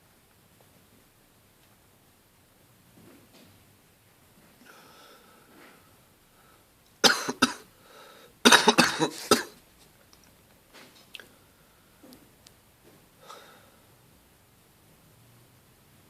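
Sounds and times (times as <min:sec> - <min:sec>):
person coughing hard: 0:07.0 - 0:07.7, 0:08.4 - 0:09.6.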